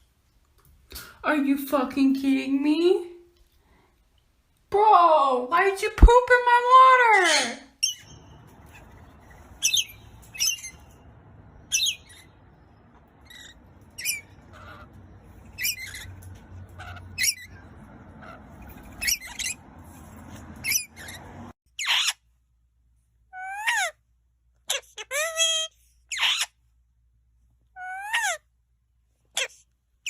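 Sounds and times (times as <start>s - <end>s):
parrot squawks and chirps: 7.2s - 22.3s, 23.3s - 24.0s, 24.6s - 26.6s, 27.7s - 28.5s, 29.3s - 29.7s.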